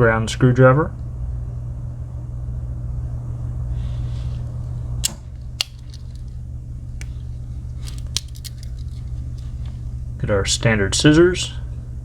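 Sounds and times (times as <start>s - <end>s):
low hum: 1.4s - 10.4s
pocket knife tools clicking: 5.0s - 6.3s, 7.9s - 9.0s.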